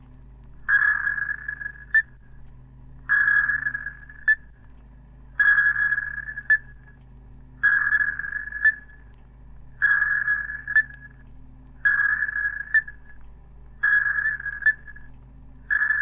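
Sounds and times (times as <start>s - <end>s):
low steady hum: 0.0s - 16.0s
sonar tone and ping: 0.6s - 2.3s, 3.0s - 4.6s, 5.4s - 7.0s, 7.6s - 9.1s, 9.8s - 13.2s, 13.8s - 16.0s.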